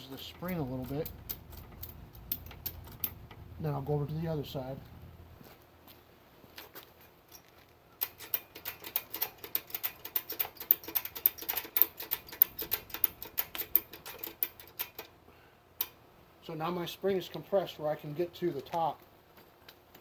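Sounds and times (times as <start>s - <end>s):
ratchet strap clicking: 0.3s - 3.5s, 8.0s - 15.2s.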